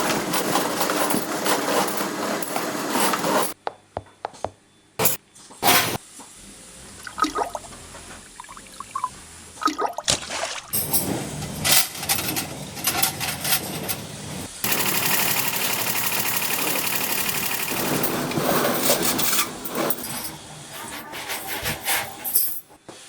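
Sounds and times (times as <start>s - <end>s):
metal parts clattering: 0.0s - 3.6s, 10.8s - 22.7s
machine grinding: 10.8s - 20.8s.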